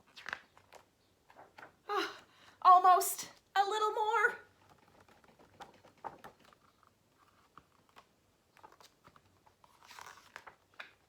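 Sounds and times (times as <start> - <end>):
picture book taps and rustles: 0.0 - 1.8, 4.5 - 11.0.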